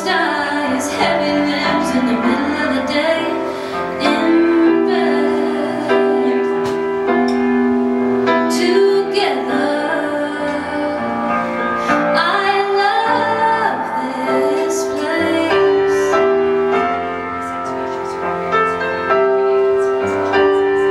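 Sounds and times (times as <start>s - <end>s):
woman singing long notes: 0.0s - 6.8s
instrumental accompaniment: 0.0s - 20.9s.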